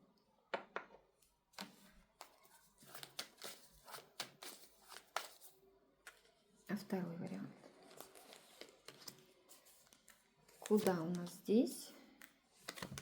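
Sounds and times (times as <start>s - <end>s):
cards clicking and rustling: 1.6s - 6.3s, 7.7s - 11.4s, 12.2s - 13.0s.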